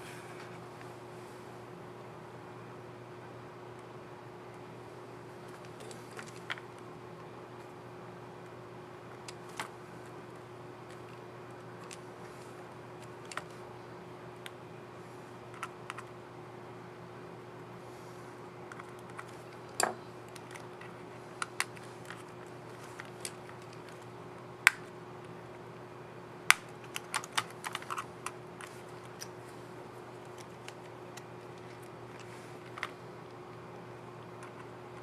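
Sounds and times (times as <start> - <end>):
plastic keycap clicks and snaps: 26.5 - 28.1.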